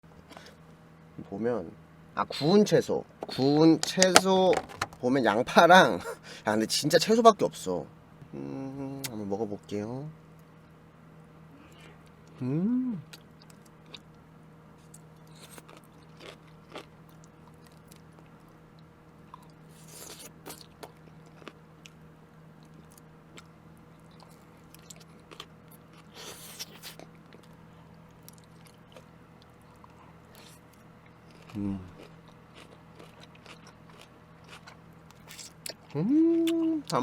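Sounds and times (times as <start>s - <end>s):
person humming: 11.6s - 13.2s, 31.5s - 32.0s, 35.9s - 36.9s
person chewing vegetables: 14.8s - 22.0s, 22.6s - 37.0s.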